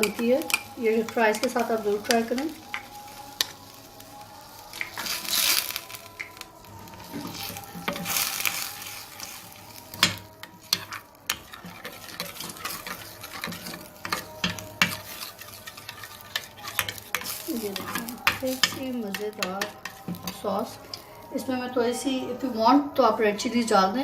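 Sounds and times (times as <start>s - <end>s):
spoon scraping sauce in a bowl: 4.8s - 21.0s.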